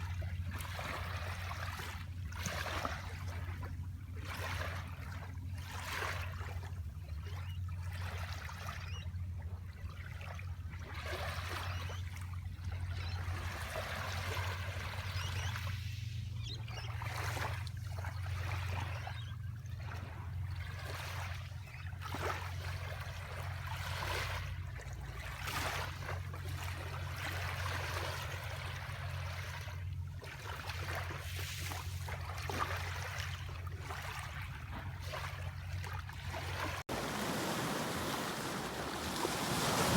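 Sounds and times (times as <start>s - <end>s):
sea waves washing on shore: 36.8s - 39.9s.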